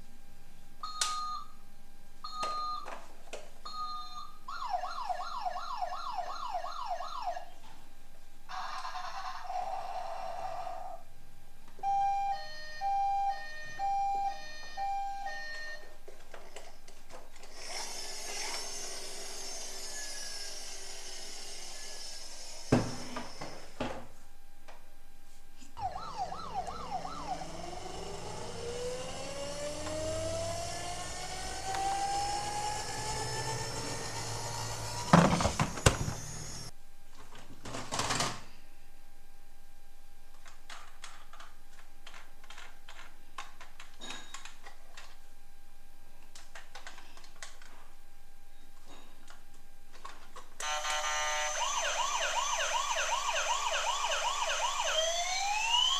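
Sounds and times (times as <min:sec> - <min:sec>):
toy siren wailing: 0:25.8 - 0:35.2, 0:50.6 - 0:55.9.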